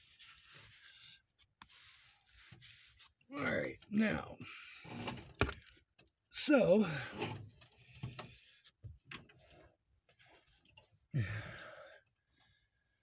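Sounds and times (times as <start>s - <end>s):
person sighing: 11.1s - 11.9s.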